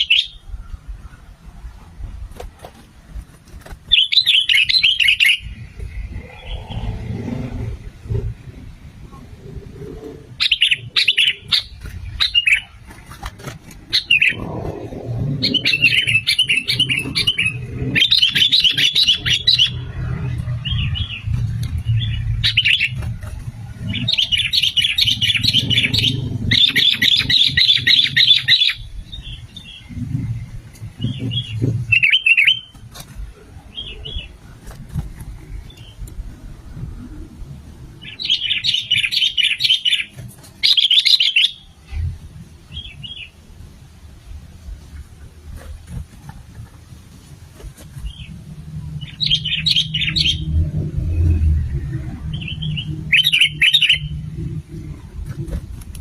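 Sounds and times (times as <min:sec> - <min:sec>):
birds chirping: 0:00.0 - 0:01.8, 0:03.4 - 0:36.4, 0:37.0 - 0:43.5, 0:47.8 - 0:56.0
low background rumble: 0:00.0 - 0:56.0.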